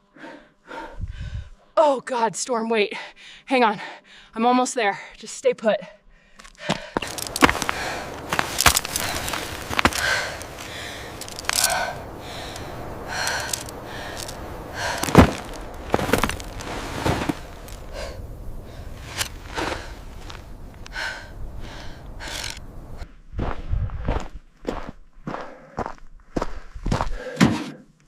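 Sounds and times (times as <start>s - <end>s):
person gasping and panting: 6.2s - 22.6s, 27.0s - 27.7s.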